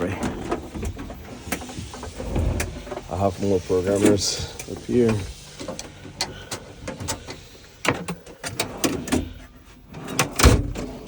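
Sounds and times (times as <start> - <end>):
heavy thud: 2.2 - 3.1.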